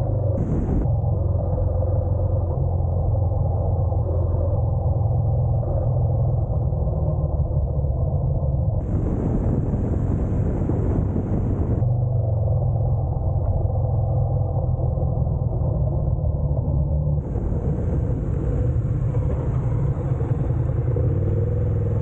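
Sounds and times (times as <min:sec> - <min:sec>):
motorcycle engine humming: 0:08.8 - 0:11.8, 0:17.2 - 0:22.0.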